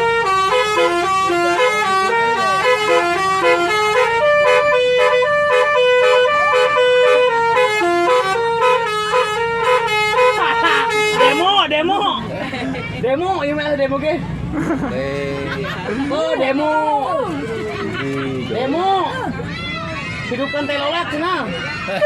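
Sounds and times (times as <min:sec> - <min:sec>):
multi-tone musical horn melody: 0:00.0 - 0:11.7.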